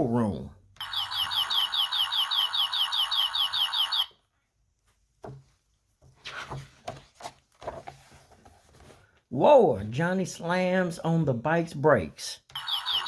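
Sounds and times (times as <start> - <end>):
faint knocks and rustles: 4.8 - 9.2.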